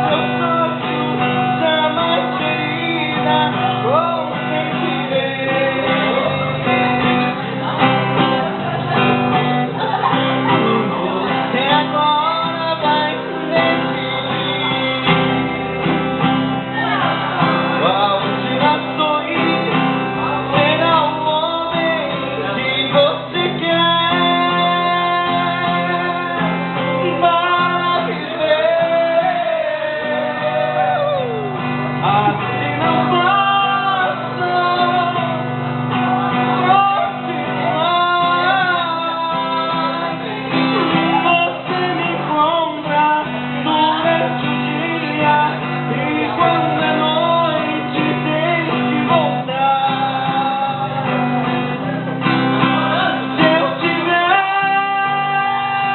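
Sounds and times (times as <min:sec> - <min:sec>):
guitar: 0:00.0 - 0:55.9
person singing: 0:00.0 - 0:55.9.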